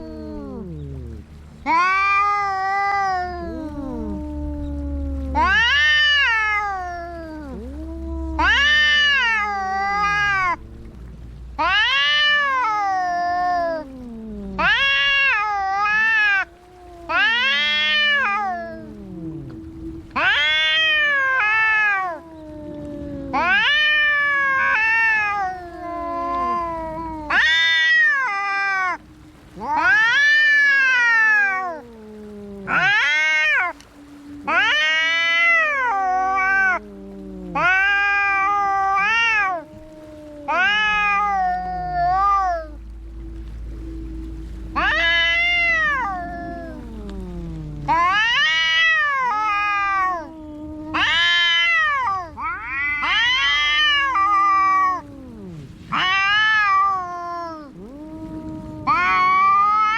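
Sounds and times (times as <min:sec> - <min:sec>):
cats wailing in a fight: 0:00.0 - 0:29.0, 0:29.6 - 0:43.2, 0:43.8 - 0:59.9
low held cat yowl: 0:00.0 - 0:59.9.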